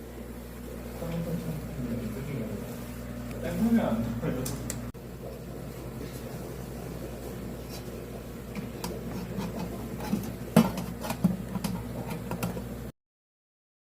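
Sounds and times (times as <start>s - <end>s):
air conditioner humming: 0.0s - 12.9s.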